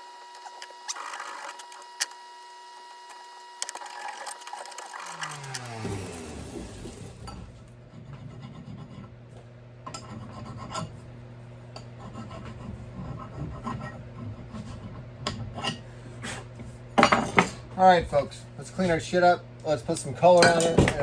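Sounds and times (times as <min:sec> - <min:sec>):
steady low hum: 0:05.2 - 0:21.0
filing or sanding strokes: 0:07.9 - 0:09.1, 0:10.0 - 0:10.9, 0:12.0 - 0:15.0.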